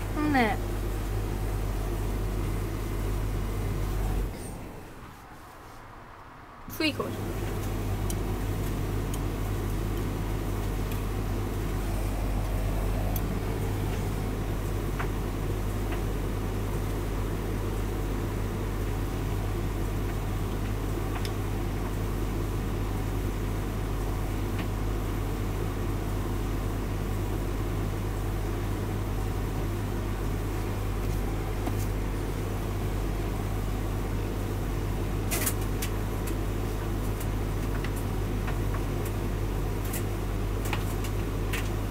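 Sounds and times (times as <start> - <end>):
tumble dryer motor hum: 0.0 - 41.9
dryer click: 12.4 - 15.2.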